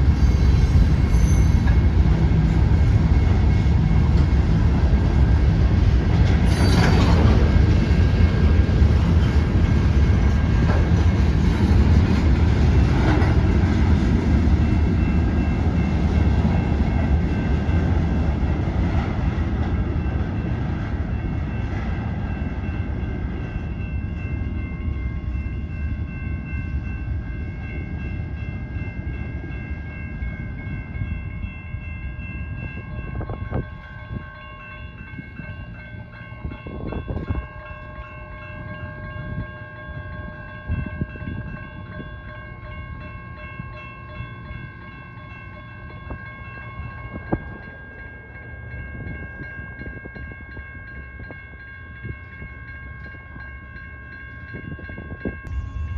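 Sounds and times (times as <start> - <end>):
high-pitched squeal: 0.0 - 1.9
train rumbling past: 0.0 - 55.9.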